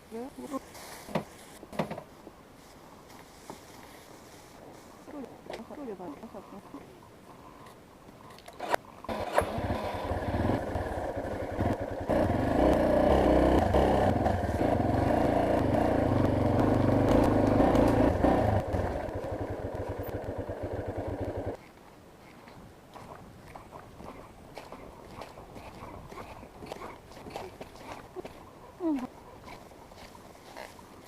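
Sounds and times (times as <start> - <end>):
motorcycle engine running: 9.1 - 21.6.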